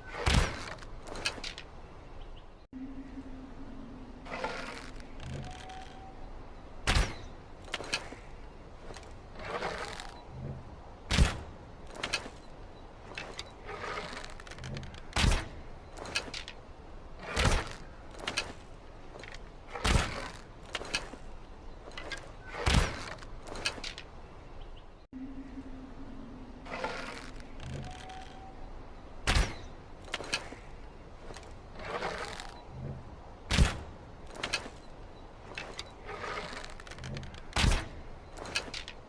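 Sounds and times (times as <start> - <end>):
low steady hum: 0.0 - 9.4, 10.1 - 31.8
scraping and rustling: 29.5 - 39.0.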